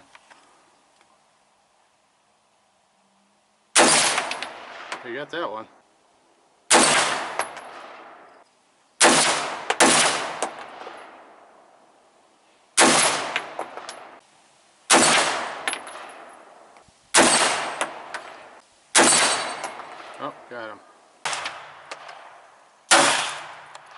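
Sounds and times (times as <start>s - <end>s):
gunshots: 3.8s - 5.2s, 6.7s - 8.2s, 9.0s - 11.2s, 12.8s - 14.2s, 14.9s - 16.3s, 17.1s - 20.4s, 21.2s - 23.9s.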